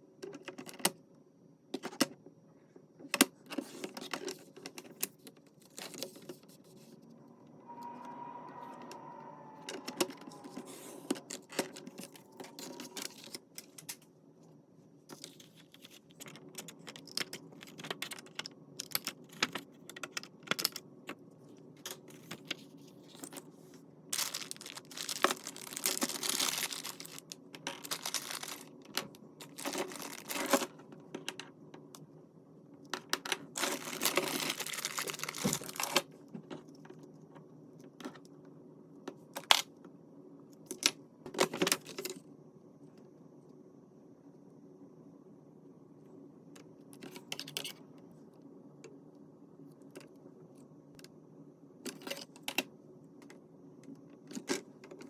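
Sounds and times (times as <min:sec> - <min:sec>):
paper rustling and tearing: 0:24.2 - 0:28.7, 0:29.4 - 0:30.7, 0:33.6 - 0:36.0.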